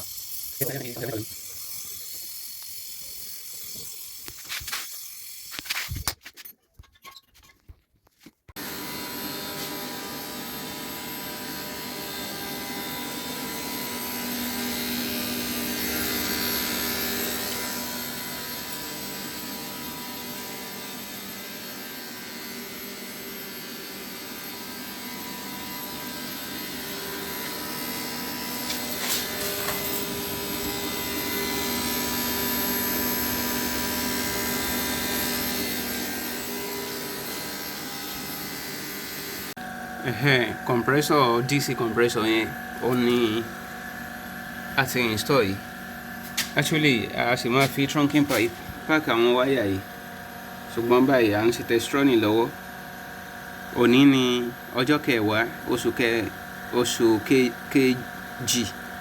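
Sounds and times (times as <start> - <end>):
compressor hum: 8.6 - 59.0
cooling fan rushing: 9.2 - 51.9.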